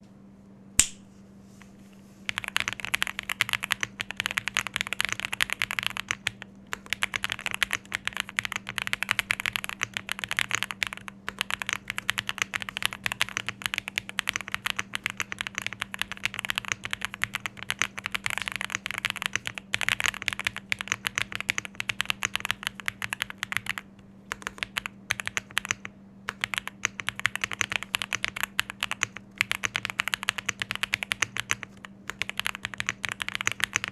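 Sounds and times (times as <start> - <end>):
sharp click: 0.8 - 1.0
fast typing on mechanical keyboard: 2.3 - 33.9.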